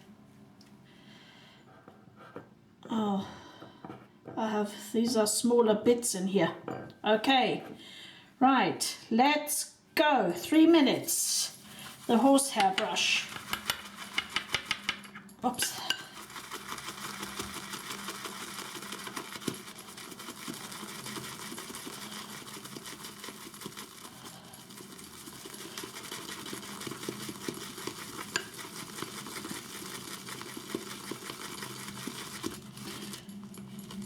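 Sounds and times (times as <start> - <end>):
shaving brush swishing in bowl: 11.0 - 14.9, 15.5 - 34.0.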